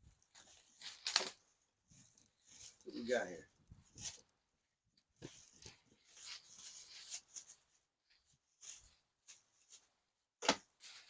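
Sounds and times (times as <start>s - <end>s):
rustling plastic packaging: 0.2s - 3.4s.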